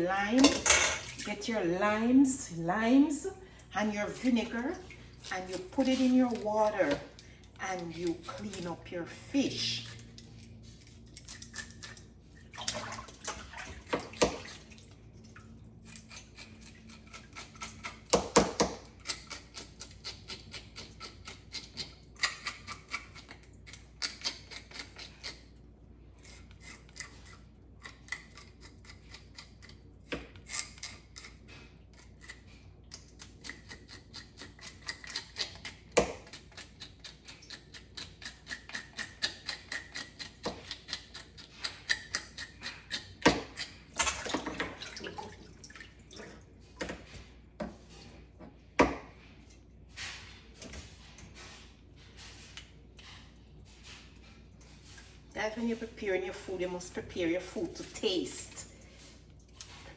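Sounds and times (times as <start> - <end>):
knife scraping fish scales: 9.7 - 12.1, 15.8 - 18.1, 18.9 - 25.6, 26.2 - 44.0
water splashing in a basin: 12.4 - 15.5, 44.0 - 46.6.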